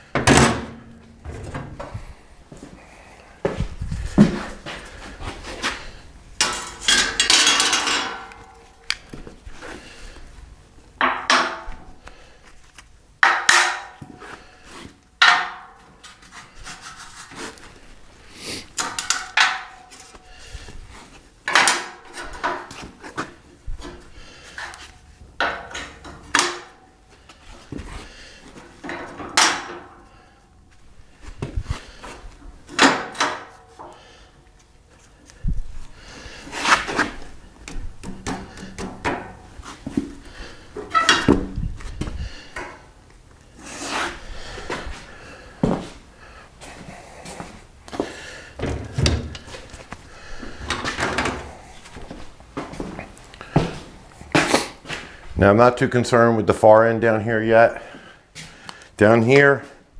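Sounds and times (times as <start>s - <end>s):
steel tubing knocking and clanking: 6.4s - 9.0s, 11.0s - 12.0s, 13.2s - 14.2s, 15.2s - 15.8s, 18.8s - 20.1s, 25.4s - 26.8s, 28.8s - 30.1s, 37.7s - 40.2s, 40.8s - 42.8s, 48.6s - 49.7s.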